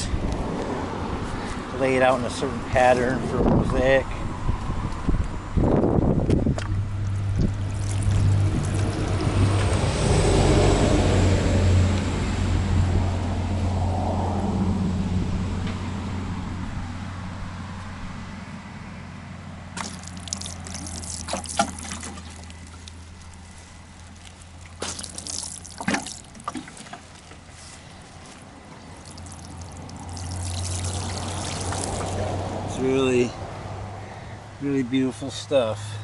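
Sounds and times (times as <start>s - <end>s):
water splashing on stone: 7.4s - 9.7s, 19.8s - 27.5s, 28.9s - 32.4s.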